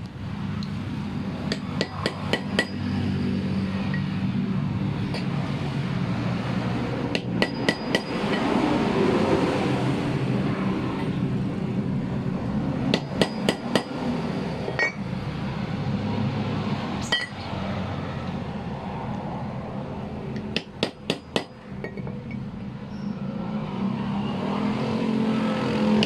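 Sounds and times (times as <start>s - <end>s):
hammer striking metal: 1.5s - 2.9s, 7.1s - 8.5s, 12.9s - 14.0s, 14.6s - 15.1s, 17.0s - 17.5s, 20.4s - 22.4s.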